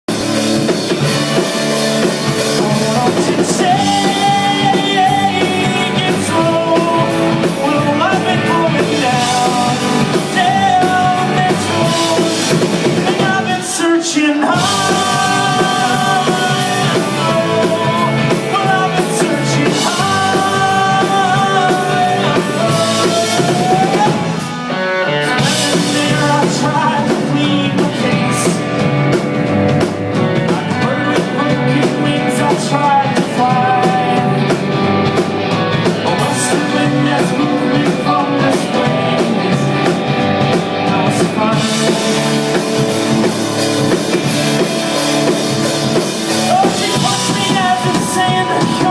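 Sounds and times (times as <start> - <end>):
rock song: 0.0 - 48.9
drum kit beat: 0.1 - 48.9
person singing long notes: 2.4 - 28.6, 46.4 - 48.9.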